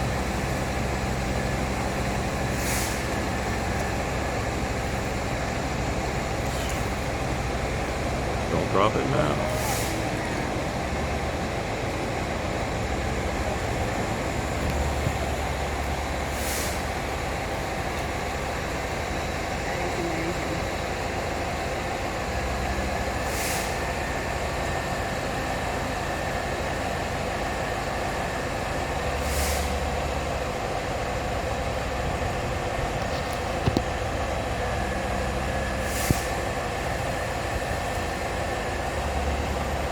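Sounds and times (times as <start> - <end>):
diesel engine running: 0.0 - 39.9
short air hisses: 2.6 - 3.1, 16.3 - 16.9, 23.3 - 23.8, 29.2 - 29.8, 35.8 - 36.4.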